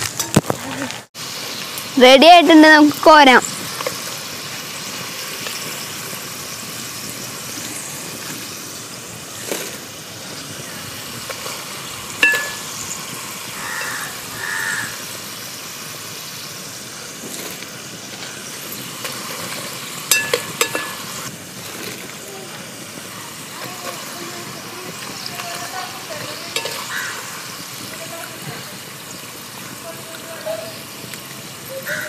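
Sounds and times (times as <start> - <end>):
potatoes sizzling in hot oil: 0.0 - 32.0
metal spoon clinking: 12.2 - 12.7, 20.1 - 21.1, 26.5 - 27.0.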